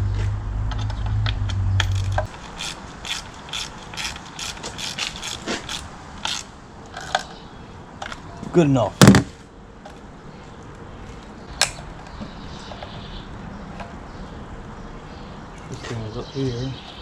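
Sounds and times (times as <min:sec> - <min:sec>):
socket ratchet clicking: 0:01.9 - 0:07.3.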